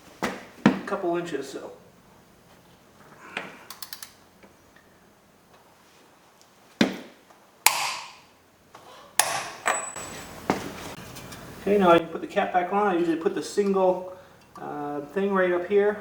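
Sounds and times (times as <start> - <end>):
sharp metallic knocks: 7.7 - 8.2.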